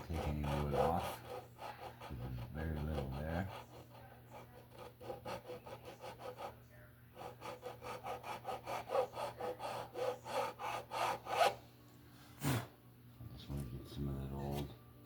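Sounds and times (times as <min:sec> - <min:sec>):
hand abrasive rubbing on wood: 0:00.0 - 0:11.6.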